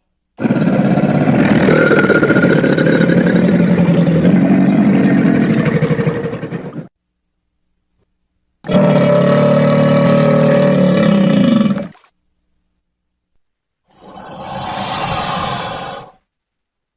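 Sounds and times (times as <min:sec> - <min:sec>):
crocodile growling: 0:00.4 - 0:06.9, 0:08.7 - 0:12.0, 0:13.9 - 0:16.2.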